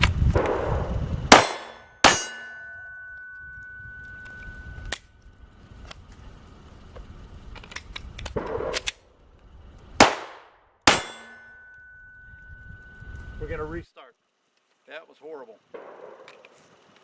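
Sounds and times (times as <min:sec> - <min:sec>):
pistol shots with echo: 0:00.4 - 0:02.5, 0:10.0 - 0:11.4, 0:15.7 - 0:16.4
magazine clicking and rattling: 0:07.5 - 0:09.0, 0:15.8 - 0:17.0.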